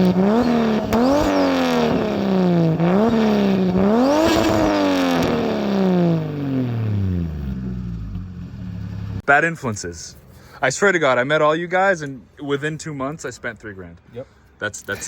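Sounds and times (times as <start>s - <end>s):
car engine revving: 0.0s - 9.2s.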